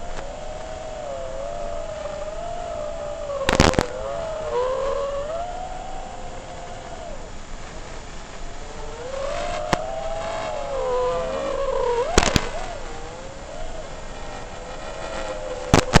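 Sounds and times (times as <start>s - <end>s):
drone motors whining: 0.0s - 16.0s
sharp clicks: 3.4s - 4.0s, 12.1s - 12.7s.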